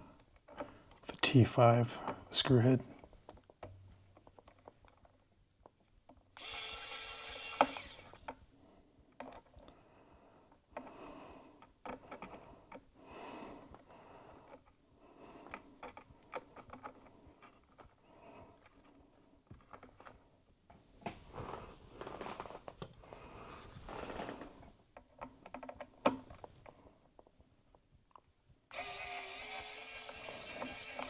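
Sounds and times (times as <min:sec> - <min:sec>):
loud rasping burst: 0:06.4 - 0:08.3, 0:28.7 - 0:31.0
screwdriver scrapes and clicks: 0:06.4 - 0:08.4, 0:28.7 - 0:31.0.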